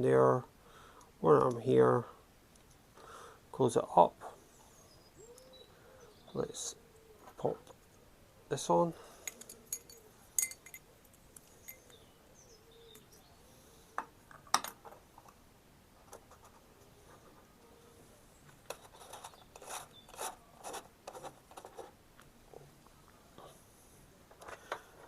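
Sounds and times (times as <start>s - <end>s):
scraping and clicking: 18.5s - 21.9s.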